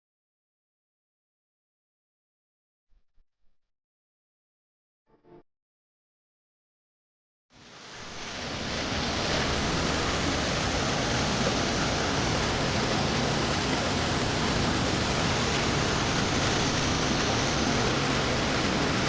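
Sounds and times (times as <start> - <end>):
waterfall roaring: 7.6 - 19.0.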